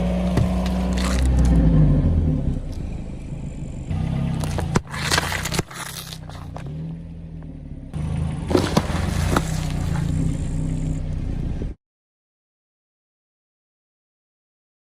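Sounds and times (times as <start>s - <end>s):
car engine running low: 0.0s - 11.8s
objects cracking under tyres: 0.3s - 1.6s, 4.2s - 6.9s, 8.5s - 10.3s.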